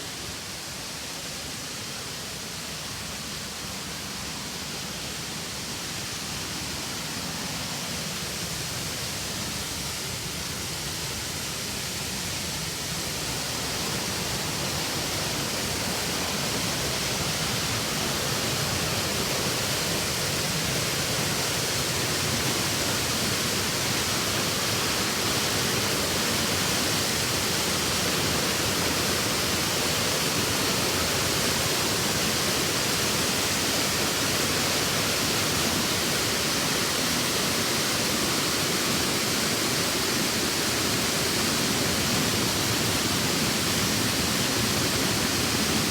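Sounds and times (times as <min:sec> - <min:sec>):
river water rushing over rocks: 0:12.9 - 0:45.9.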